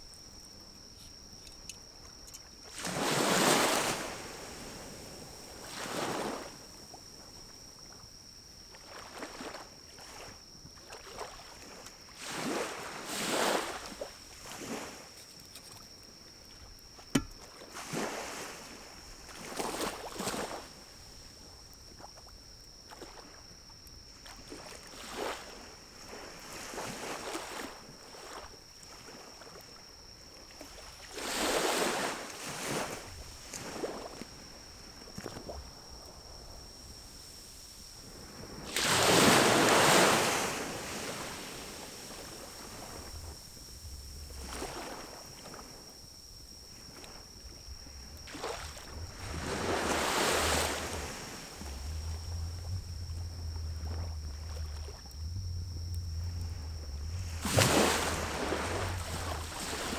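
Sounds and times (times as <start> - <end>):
fire popping: 47.3 - 59.9
fire whooshing in a stove: 47.5 - 59.9.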